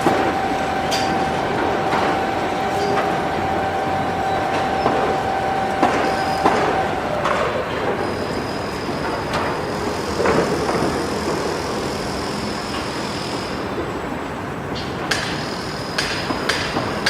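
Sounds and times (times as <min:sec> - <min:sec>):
faint high whine: 0:00.0 - 0:10.4
construction machinery din: 0:00.0 - 0:17.0.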